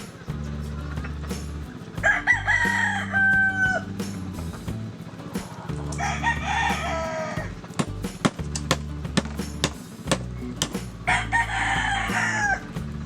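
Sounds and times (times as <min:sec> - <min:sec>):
background music with low notes: 0:00.0 - 0:13.0
rooster crowing: 0:02.0 - 0:03.9, 0:06.0 - 0:07.5, 0:11.1 - 0:12.6.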